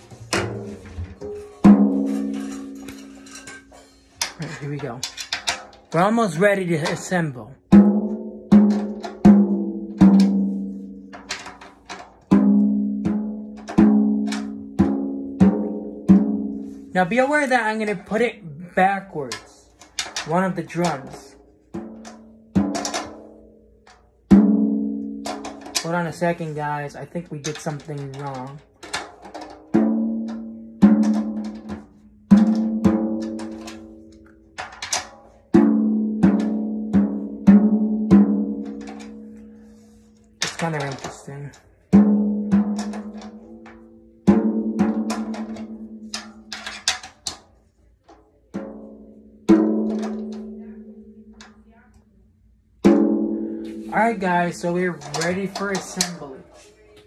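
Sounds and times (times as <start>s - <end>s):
pitched drum hits: 0.0s - 3.1s, 7.7s - 10.7s, 52.8s - 56.0s.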